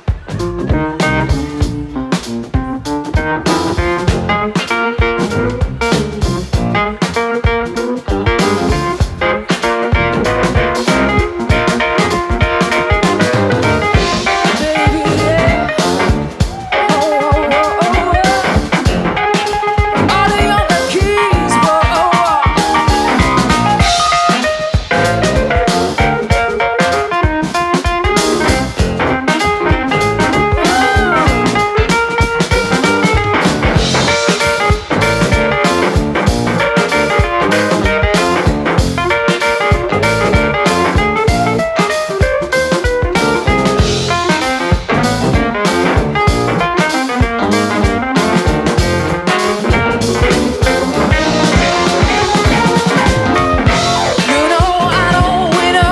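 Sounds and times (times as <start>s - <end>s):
drum kit: 0.0s - 55.9s
electric guitar: 0.0s - 55.9s
keyboards: 0.0s - 55.9s.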